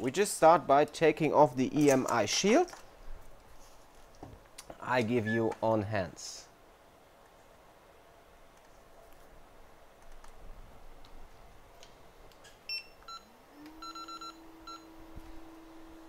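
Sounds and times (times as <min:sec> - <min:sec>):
hot-air blower hum: 0:13.2 - 0:16.0.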